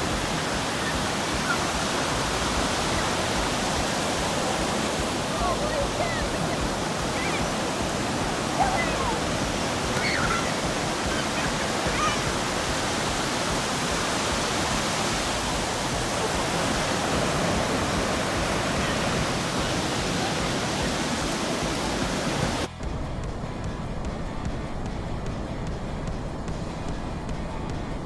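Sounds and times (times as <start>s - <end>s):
steady rushing noise: 0.0s - 28.0s
faint chirps: 5.3s - 12.7s.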